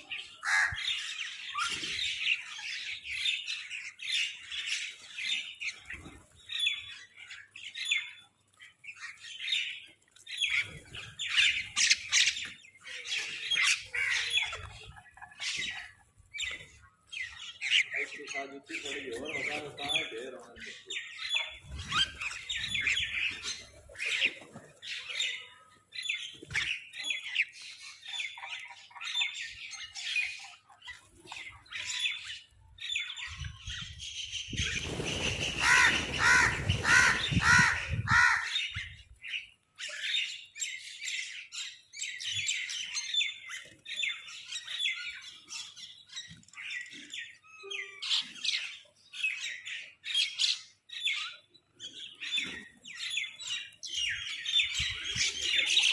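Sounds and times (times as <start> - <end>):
crows squawking: 0.0 - 1.3, 35.4 - 38.8.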